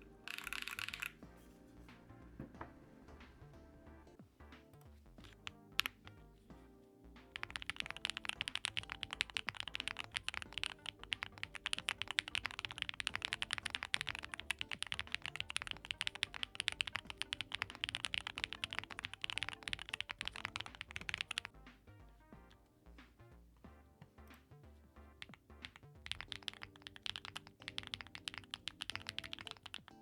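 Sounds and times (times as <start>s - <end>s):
mechanical keyboard typing: 0.0s - 1.2s, 5.2s - 6.6s, 7.2s - 21.7s, 25.2s - 30.0s
quiet background music: 0.0s - 30.0s.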